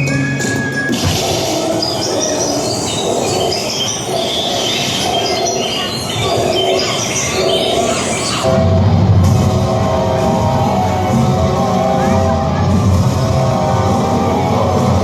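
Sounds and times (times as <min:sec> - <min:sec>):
birds chirping: 0:00.0 - 0:08.5
steady noisy background: 0:00.0 - 0:15.0.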